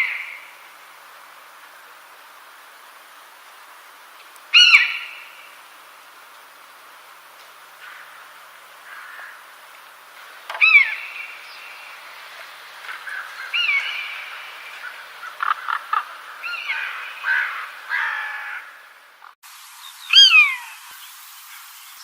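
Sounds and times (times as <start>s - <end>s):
steady background hiss: 0.0s - 22.0s
bird downward-slurring calls: 4.5s - 5.6s, 10.5s - 12.1s, 13.0s - 19.3s, 20.0s - 21.1s.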